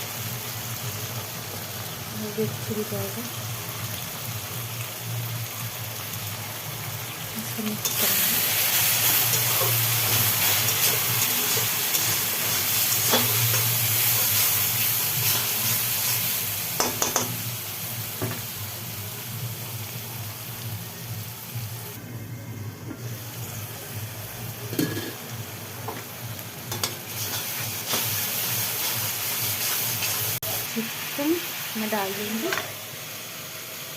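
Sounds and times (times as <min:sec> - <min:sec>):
food sizzling in a pan: 0:00.0 - 0:22.1, 0:22.7 - 0:33.9
spoon scraping a pan: 0:07.8 - 0:16.2, 0:24.7 - 0:25.2, 0:26.7 - 0:30.3.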